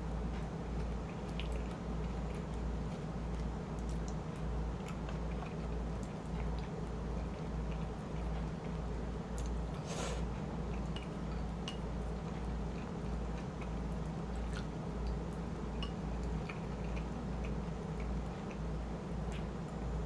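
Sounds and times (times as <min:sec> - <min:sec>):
chewing food: 0:00.0 - 0:19.8.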